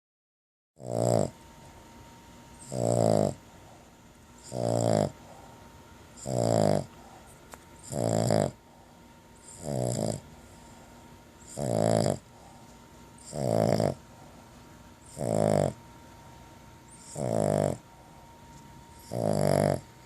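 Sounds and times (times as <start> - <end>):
dog snoring: 0.8 - 1.4, 2.5 - 5.6, 6.2 - 15.8, 16.9 - 18.2, 18.9 - 20.0.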